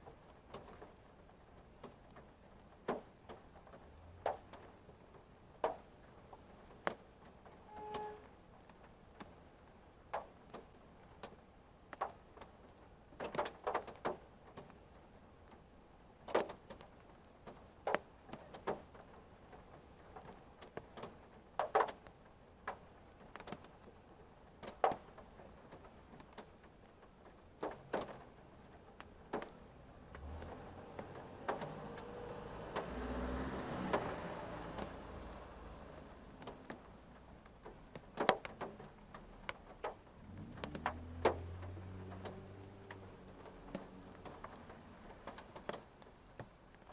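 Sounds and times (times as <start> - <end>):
raindrops tapping on a car: 0.0 - 7.6, 8.5 - 46.9
low rumble: 40.1 - 45.4.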